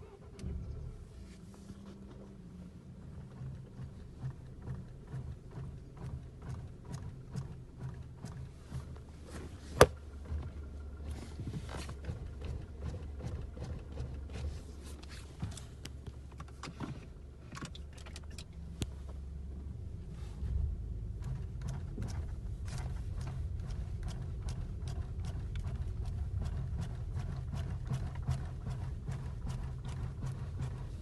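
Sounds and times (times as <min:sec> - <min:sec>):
steering rack knocking: 0:03.2 - 0:14.7.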